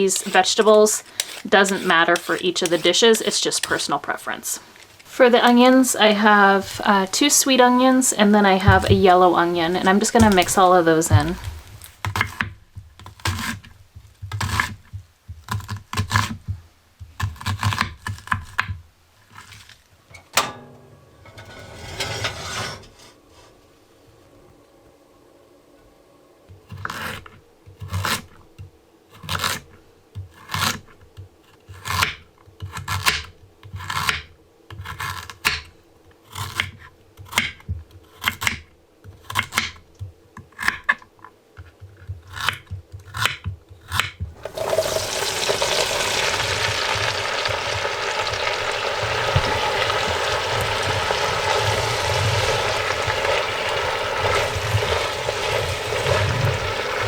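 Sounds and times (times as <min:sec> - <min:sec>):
vegetables sizzling in a pan: 0:04.4 - 0:12.0, 0:44.3 - 0:57.0.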